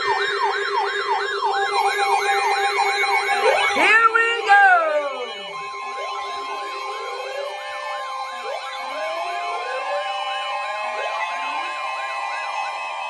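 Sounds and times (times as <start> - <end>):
sirens yelping and wailing: 0.0 - 13.0.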